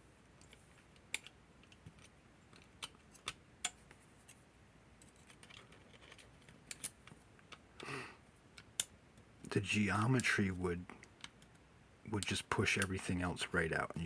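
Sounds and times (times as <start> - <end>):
small metal parts clicking: 5.0 - 7.6.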